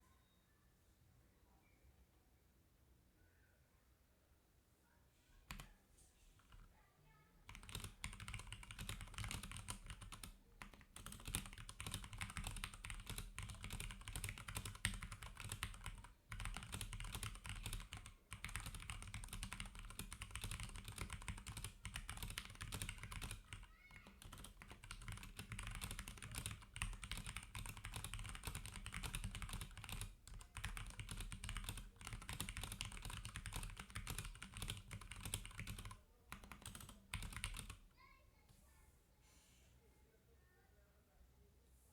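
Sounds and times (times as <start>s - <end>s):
mechanical keyboard typing: 5.5s - 5.7s, 6.4s - 6.7s, 7.5s - 37.8s.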